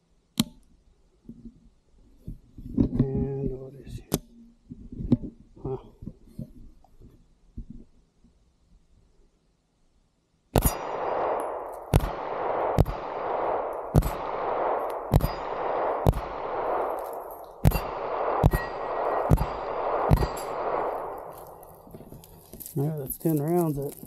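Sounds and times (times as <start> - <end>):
pistol shots with ringing echo: 10.6 - 21.9.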